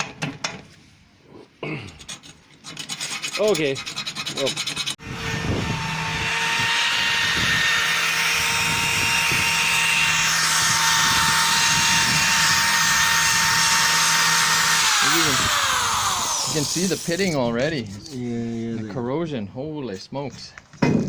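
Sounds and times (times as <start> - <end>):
attachment scrubbing metal: 1.9 - 18.2
power tool whining: 5.0 - 17.4.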